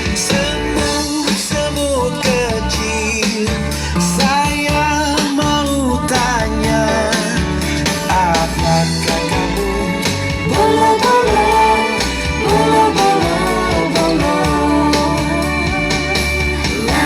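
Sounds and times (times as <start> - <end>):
bass line: 0.0 - 17.0
guitar: 0.0 - 17.0
person singing: 0.1 - 17.0.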